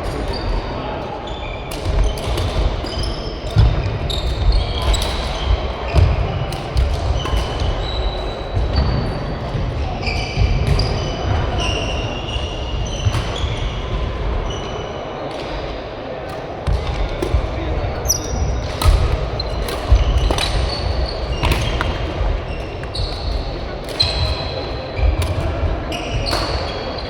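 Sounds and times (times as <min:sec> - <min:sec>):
shoes squeaking on court floor: 0:00.1 - 0:15.0, 0:16.7 - 0:27.0
racket hitting shuttlecock: 0:18.6 - 0:22.2.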